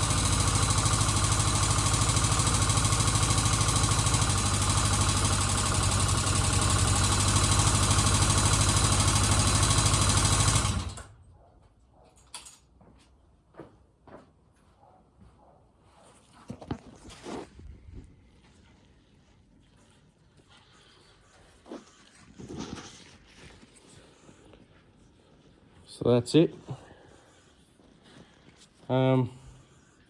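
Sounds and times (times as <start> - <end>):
motorcycle engine idling: 0.0 - 11.0.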